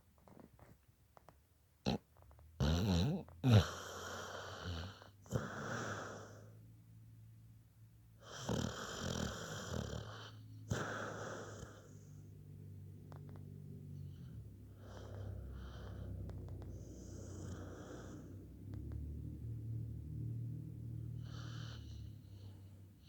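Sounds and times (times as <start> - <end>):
snoring breaths with snorts: 13.1 - 19.8, 20.4 - 23.0.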